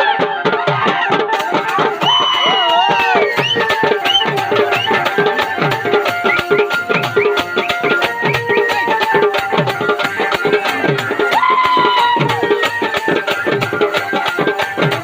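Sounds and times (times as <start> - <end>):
fast hand drumming: 0.0 - 15.0
sliding held melody: 1.3 - 11.4.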